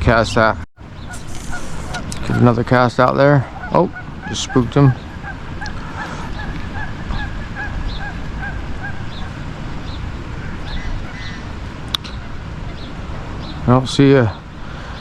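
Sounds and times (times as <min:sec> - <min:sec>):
low rumble: 0:00.8 - 0:15.0
waterfowl honking: 0:00.8 - 0:15.0.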